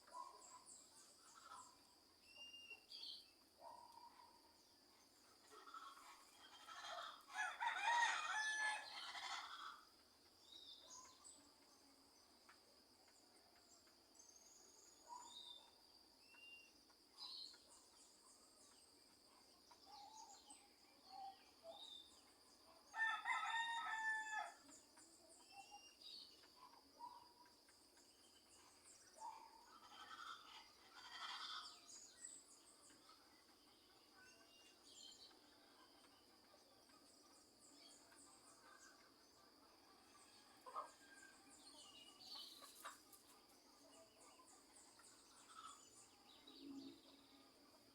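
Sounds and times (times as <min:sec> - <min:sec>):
roosters crowing: 0:05.7 - 0:09.8, 0:23.0 - 0:24.6.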